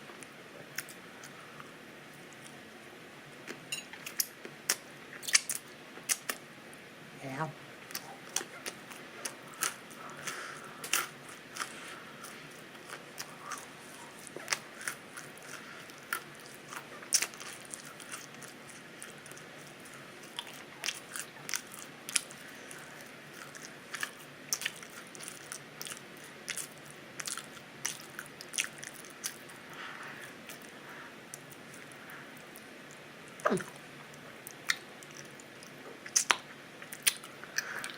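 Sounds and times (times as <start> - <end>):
pizza crunching while chewing: 7.9 - 37.9.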